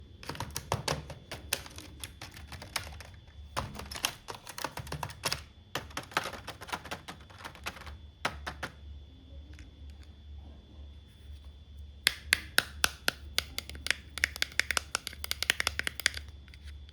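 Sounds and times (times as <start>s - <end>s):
faint low hum: 0.0s - 16.9s
plastic toy pieces clicking: 0.2s - 8.8s, 12.1s - 16.3s.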